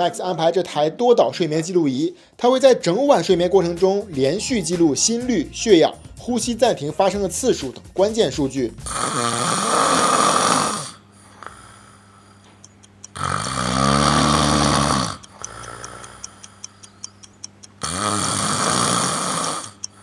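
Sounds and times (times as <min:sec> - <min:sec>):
man snoring heavily: 0:08.8 - 0:12.4, 0:13.1 - 0:16.6, 0:17.8 - 0:20.0
faint ticking: 0:11.4 - 0:20.0.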